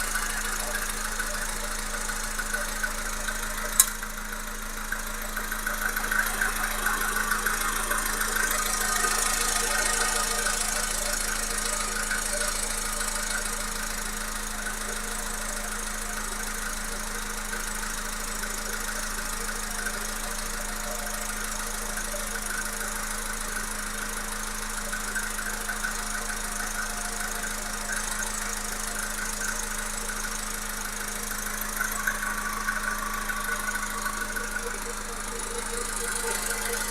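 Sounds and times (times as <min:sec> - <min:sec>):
car engine running with knock: 0:00.0 - 0:36.9.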